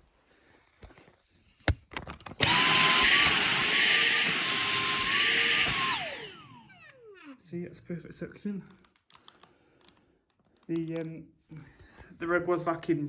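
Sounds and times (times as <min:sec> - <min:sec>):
cordless vacuum motor whine: 0:02.4 - 0:07.3.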